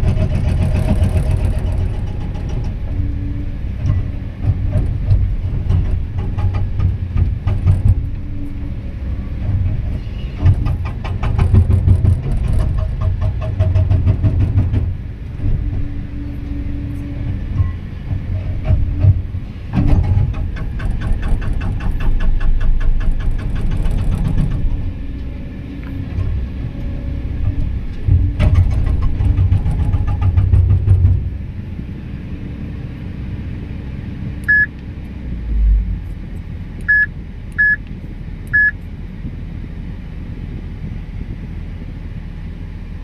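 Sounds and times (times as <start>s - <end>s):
diesel engine running: 0.0s - 43.0s
hydraulic rock breaker hammering: 10.4s - 15.9s, 18.1s - 25.0s, 28.1s - 31.3s
short beeps: 34.4s - 34.8s, 36.9s - 37.8s, 38.5s - 38.8s.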